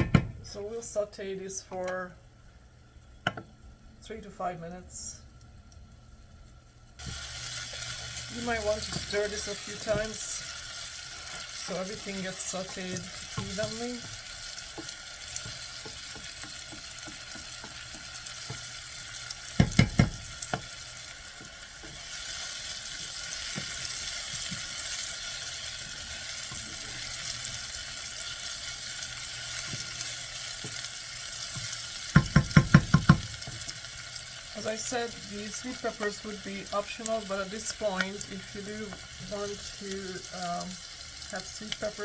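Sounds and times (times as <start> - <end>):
onions sizzling in oil: 6.3 - 42.0.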